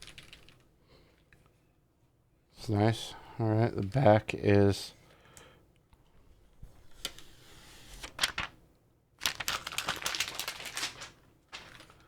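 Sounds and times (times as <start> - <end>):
soft rustling: 9.3 - 12.0.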